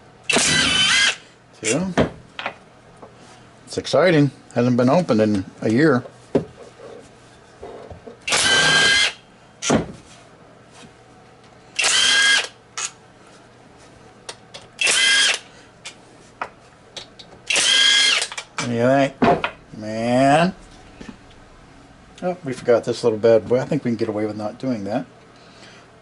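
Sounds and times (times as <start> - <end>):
power driver whirring: 0.3 - 1.2, 8.3 - 9.2, 11.8 - 12.9, 14.8 - 15.5, 17.5 - 18.5.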